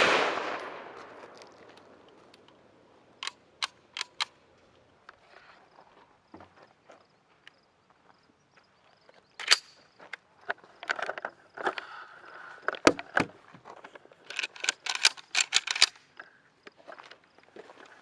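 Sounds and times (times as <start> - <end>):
clicks and knocks of handling: 12.6 - 17.2.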